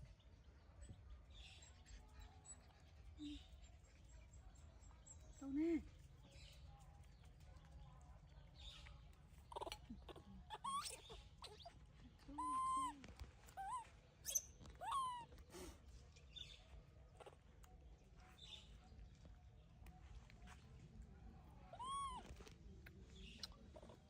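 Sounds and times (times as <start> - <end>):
baby monkeys calling: 9.4 - 12.9, 13.5 - 15.4, 21.8 - 22.4.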